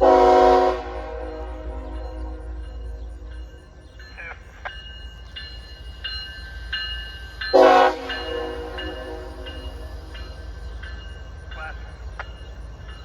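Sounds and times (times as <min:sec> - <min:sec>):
locomotive horn blast: 0:00.0 - 0:02.6, 0:07.6 - 0:09.6
train rumbling by: 0:00.0 - 0:13.0.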